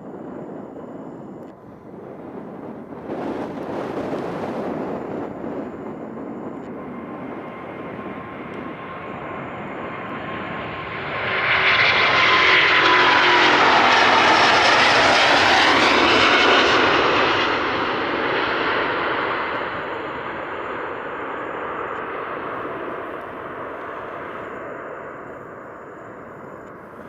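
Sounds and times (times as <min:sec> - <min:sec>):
jet engines roaring: 0:00.0 - 0:27.0.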